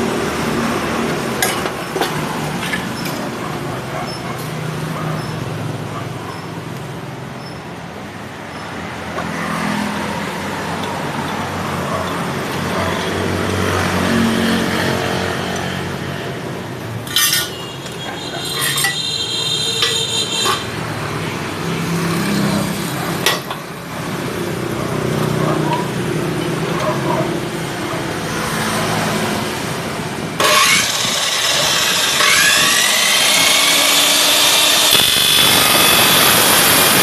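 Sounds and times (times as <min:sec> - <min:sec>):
steady mechanical noise: 0:14.7 - 0:37.0.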